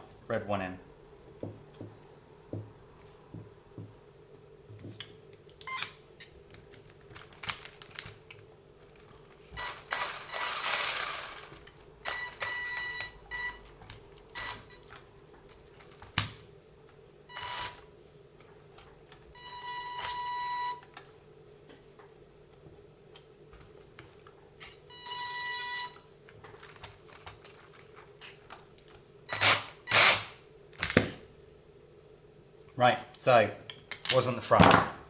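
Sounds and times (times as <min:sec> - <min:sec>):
plastic and metal parts clattering: 0:06.8 - 0:12.6.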